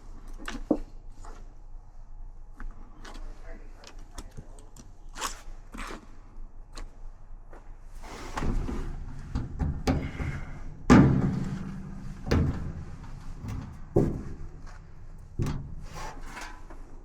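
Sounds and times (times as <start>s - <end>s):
metal parts knocking and clattering: 8.4s - 17.0s.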